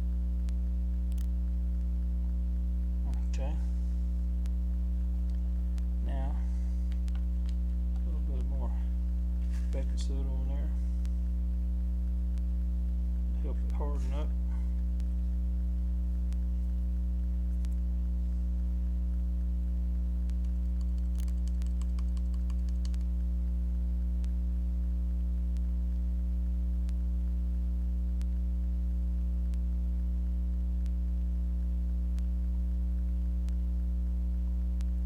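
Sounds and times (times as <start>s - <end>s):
electrical mains hum: 0.0s - 35.0s
light clicks: 20.3s - 23.2s.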